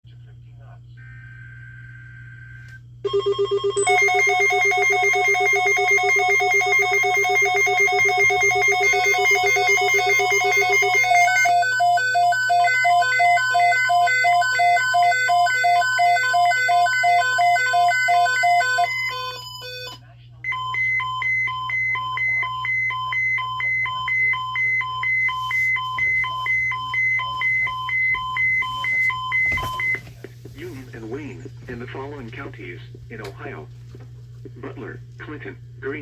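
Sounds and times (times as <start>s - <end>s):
electronic alert trill: 3.8s - 18.9s.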